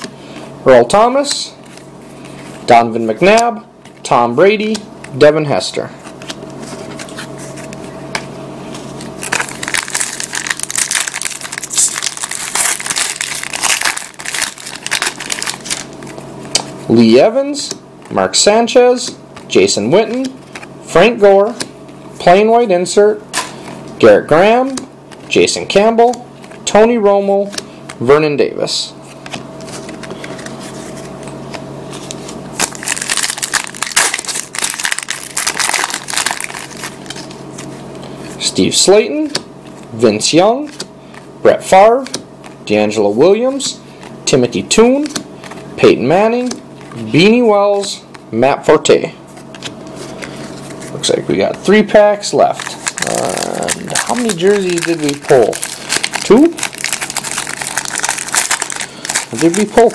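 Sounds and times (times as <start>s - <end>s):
foil wrapper crinkling and tearing: 9.2s - 16.2s, 32.0s - 37.7s, 52.5s - 59.9s.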